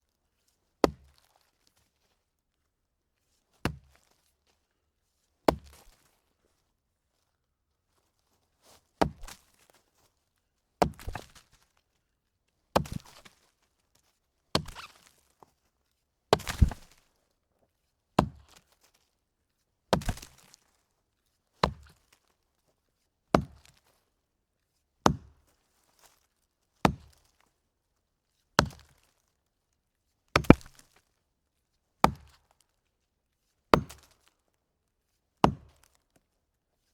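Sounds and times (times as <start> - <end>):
axe chopping wood: 9.0 - 9.4, 10.8 - 11.4, 12.8 - 13.2, 14.6 - 14.9, 16.3 - 17.0, 18.2 - 18.4, 19.9 - 20.5, 21.6 - 22.0, 23.3 - 23.8, 25.0 - 25.4, 26.9 - 27.1, 28.6 - 28.9, 30.4 - 30.8, 32.0 - 32.4, 33.8 - 34.2, 35.4 - 35.9.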